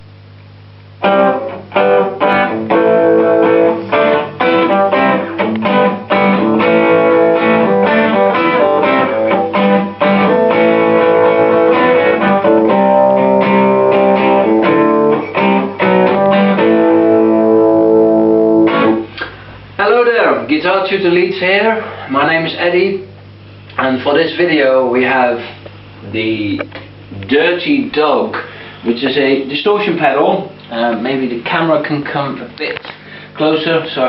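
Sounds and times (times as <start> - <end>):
electric guitar chords and notes: 0.8 - 19.8.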